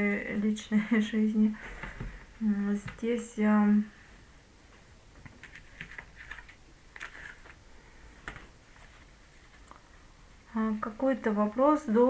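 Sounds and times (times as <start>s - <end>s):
soft handling rustles: 4.7s - 10.0s.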